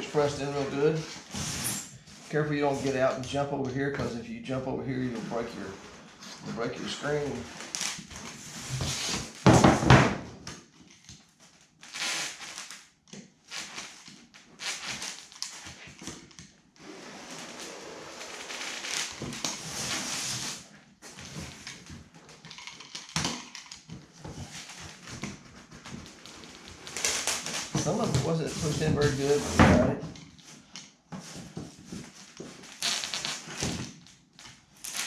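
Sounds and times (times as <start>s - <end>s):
spline roller scraping and rustling: 0.0s - 3.4s, 4.9s - 9.4s, 16.8s - 21.9s, 25.8s - 30.2s.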